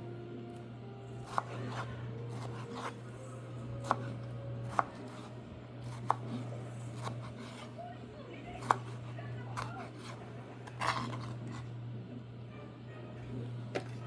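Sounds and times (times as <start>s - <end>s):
knife slicing vegetables: 1.2s - 7.8s, 8.6s - 11.7s.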